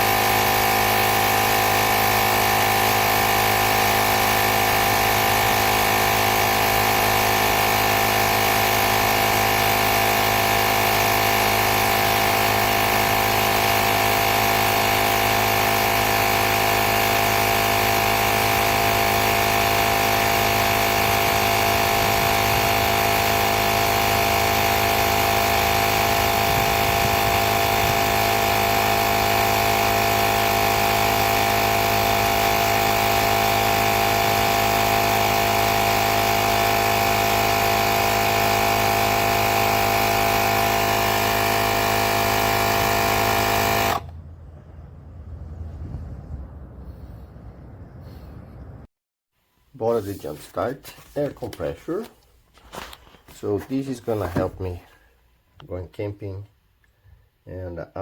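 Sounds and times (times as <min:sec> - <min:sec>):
small electric air compressor running: 0:00.0 - 0:44.2.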